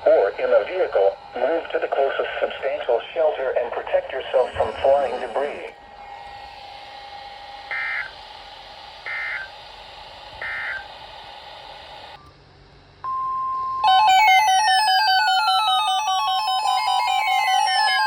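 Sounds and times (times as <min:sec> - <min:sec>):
warbling data bursts: 0:00.0 - 0:05.7, 0:13.8 - 0:18.0
faint steady hum: 0:00.0 - 0:18.0
loud electronic music: 0:13.9 - 0:18.0.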